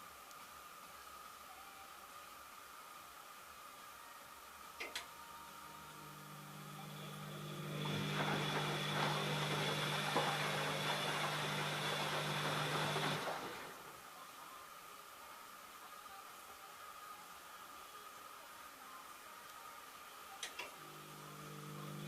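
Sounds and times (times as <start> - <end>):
washing machine motor whirring: 5.6 - 14.0, 20.7 - 22.0.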